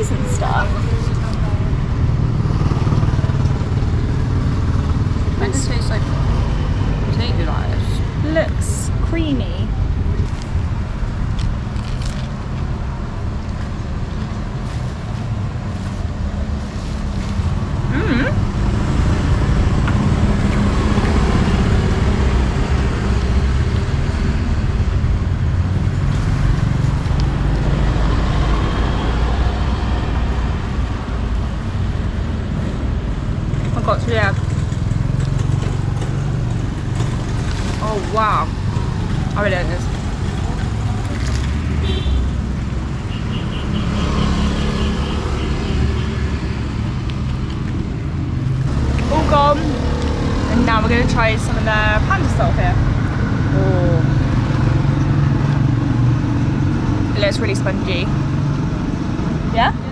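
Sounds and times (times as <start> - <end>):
traffic noise: 0.0 - 59.9
vehicle engine rumbling: 0.0 - 59.9
vehicle engine running: 46.6 - 58.9.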